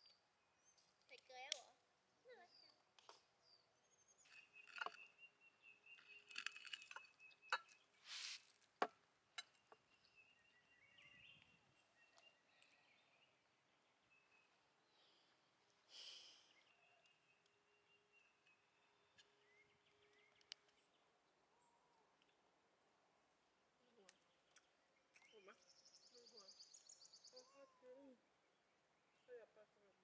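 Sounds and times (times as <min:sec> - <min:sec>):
small clicks and clinks: 0:04.3 - 0:05.1, 0:06.0 - 0:07.8
brief rustles: 0:08.0 - 0:08.6.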